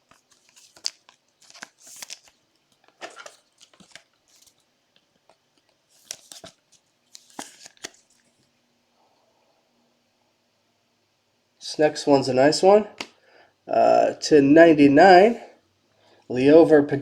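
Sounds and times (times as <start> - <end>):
plastic packaging crinkling: 0.0 - 8.5.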